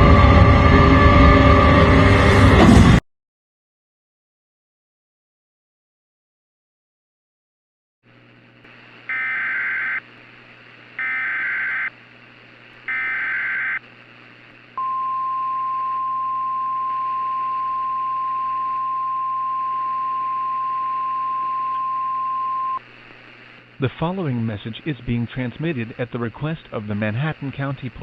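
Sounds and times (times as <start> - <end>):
low hum and hiss: 8.1 - 28.0
steady attention tone: 9.1 - 10.0, 11.0 - 11.9, 12.9 - 13.8
warbling data tones: 9.1 - 10.0, 11.0 - 11.9, 12.9 - 13.8.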